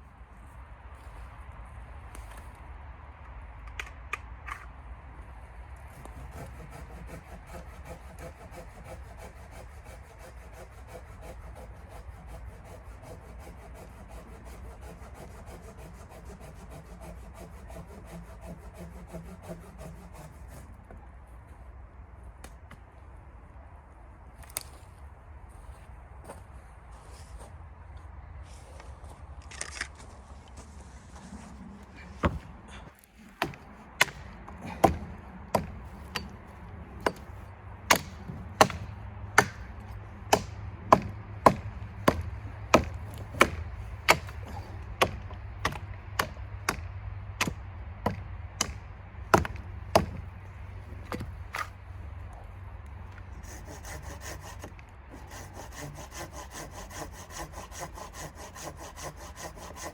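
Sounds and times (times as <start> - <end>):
hand saw cutting wood: 5.8 - 20.9, 33.0 - 52.4, 53.1 - 59.9
sharp strikes on wood: 33.4 - 36.3, 37.9 - 39.7, 40.3 - 50.3.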